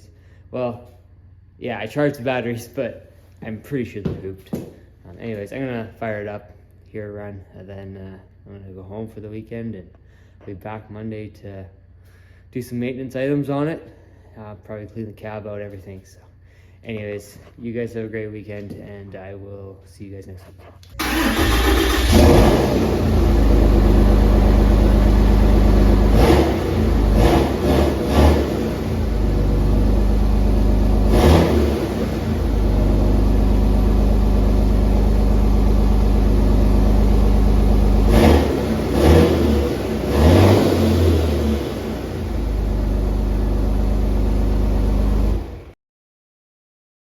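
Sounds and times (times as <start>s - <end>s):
diesel engine revving: 21.0s - 45.7s.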